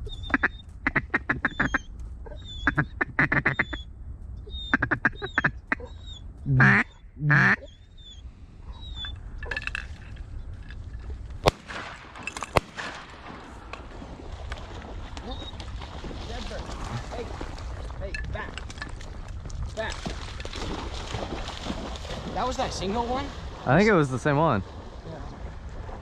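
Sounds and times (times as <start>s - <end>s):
duck quacking: 0.2s - 3.8s, 4.5s - 7.7s.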